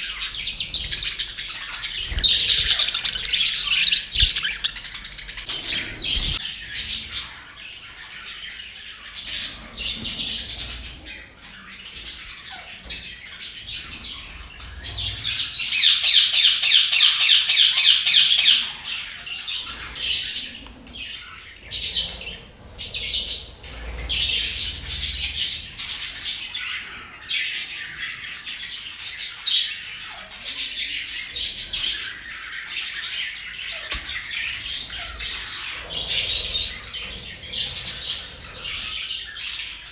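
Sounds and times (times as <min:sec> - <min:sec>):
rapid repeated squawks: 0:00.0 - 0:06.4
birds chirping and squawking: 0:00.0 - 0:39.9.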